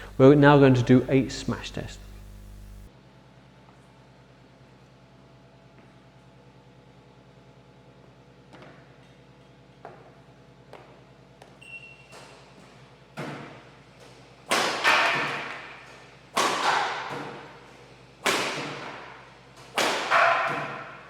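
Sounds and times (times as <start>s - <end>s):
racket hitting shuttlecock: 13.2s - 21.0s.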